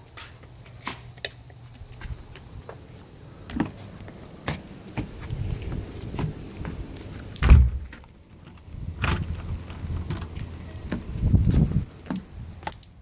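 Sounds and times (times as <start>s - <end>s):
heavy thud: 7.4s - 8.0s.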